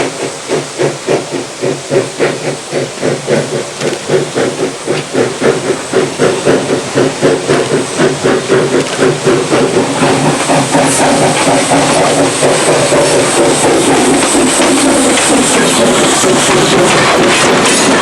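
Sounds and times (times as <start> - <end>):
steam hissing: 0.0 - 18.0
steam locomotive chuffing: 0.0 - 18.0.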